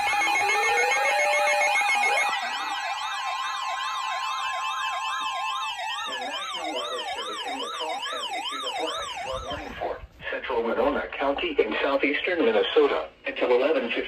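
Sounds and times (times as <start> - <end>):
pulsing alarm tone: 0.0 - 9.9
sirens sweeping up and down: 0.0 - 10.0.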